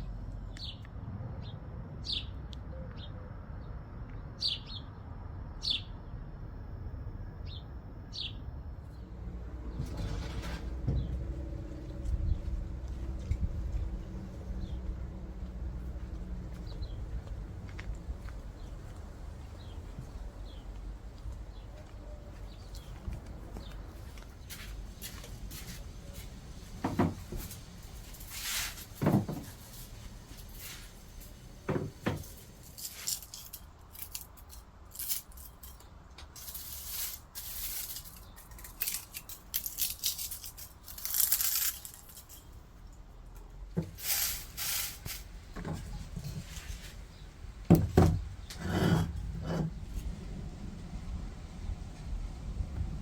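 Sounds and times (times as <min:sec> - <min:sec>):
handling knocks and clicks: 0:31.3 - 0:36.8, 0:37.8 - 0:42.5.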